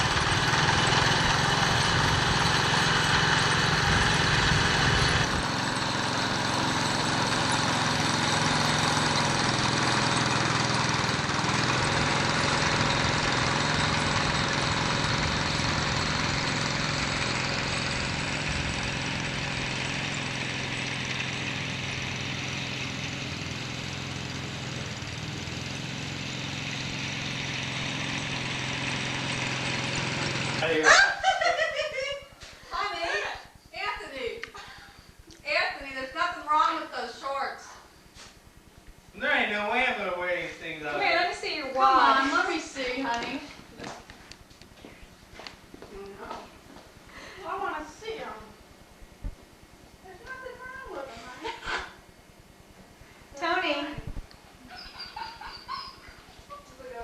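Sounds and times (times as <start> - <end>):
small engine running: 0.0 - 31.0.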